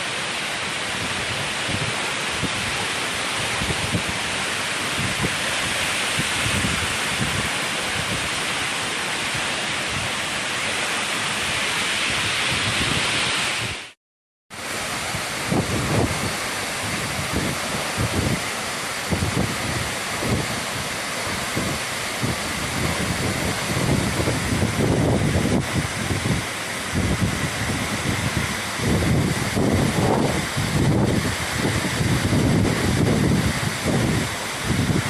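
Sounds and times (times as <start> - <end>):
waterfall pouring: 0.0 - 14.0, 14.6 - 35.0
wind buffeting microphone: 15.0 - 35.0.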